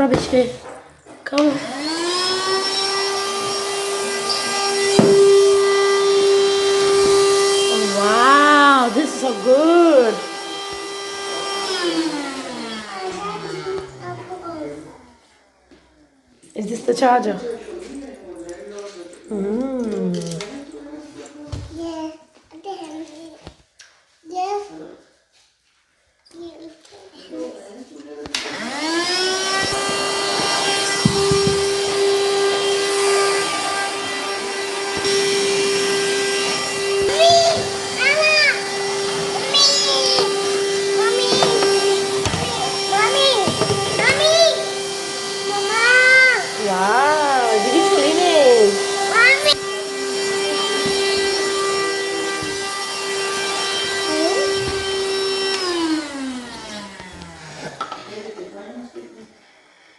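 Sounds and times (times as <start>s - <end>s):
handheld vacuum motor whine: 1.3s - 14.7s, 28.3s - 58.0s.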